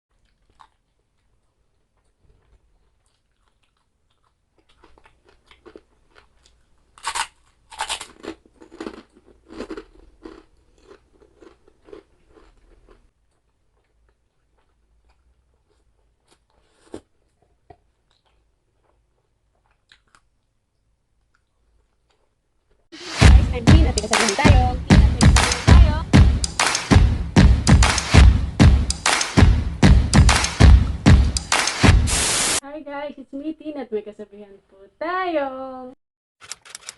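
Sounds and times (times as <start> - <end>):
crunchy chewing: 0.1 - 22.9.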